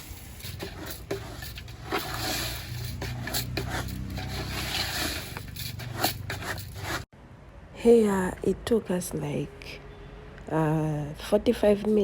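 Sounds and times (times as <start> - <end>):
scrapes and taps in a pot: 0.4 - 7.0.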